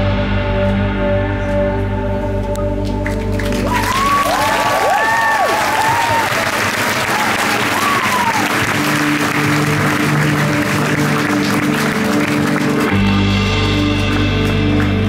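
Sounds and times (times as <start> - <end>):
deep bass note: 0.0 - 3.8, 9.2 - 15.0
crowd applauding: 2.8 - 15.0
held musical notes: 6.5 - 15.0.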